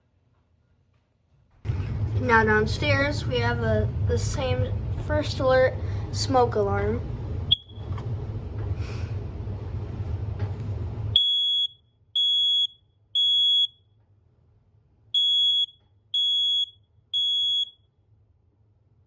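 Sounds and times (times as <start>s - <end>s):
smoke alarm beeping: 7.5s - 7.9s, 11.2s - 13.9s, 15.2s - 17.8s.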